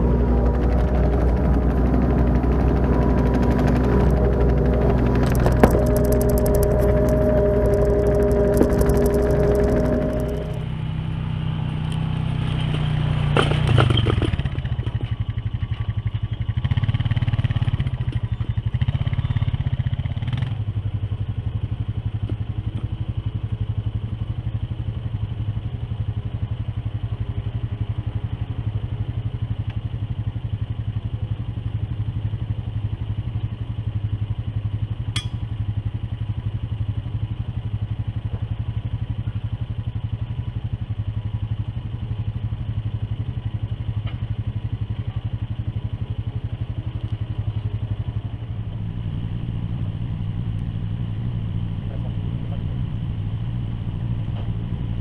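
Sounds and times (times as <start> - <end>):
excavator diesel engine running: 0.0 - 10.8, 36.1 - 55.0.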